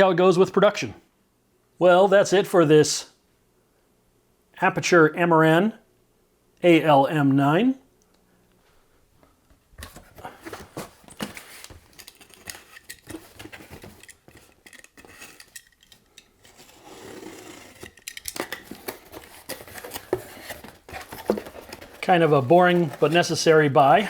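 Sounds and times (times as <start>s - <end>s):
packaging clicks scrapes and rustling: 9.8s - 24.0s.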